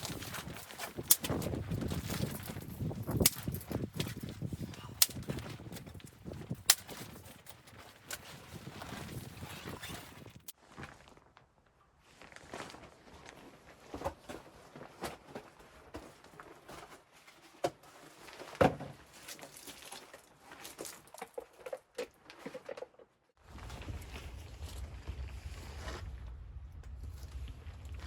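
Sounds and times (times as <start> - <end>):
steady low rumble: 23.5 - 28.0.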